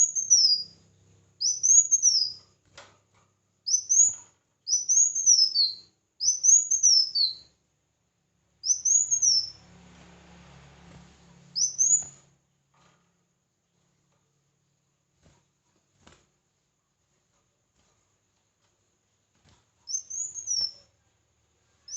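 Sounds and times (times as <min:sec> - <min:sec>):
songbird chirping: 0:00.0 - 0:02.6, 0:03.6 - 0:07.6, 0:08.5 - 0:12.6, 0:17.8 - 0:21.9.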